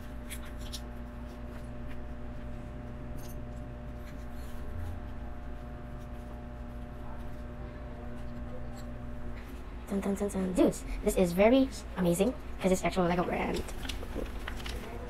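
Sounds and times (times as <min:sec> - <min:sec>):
steady low hum: 0:00.0 - 0:15.0
plastic pieces and packaging rustling: 0:13.5 - 0:15.0.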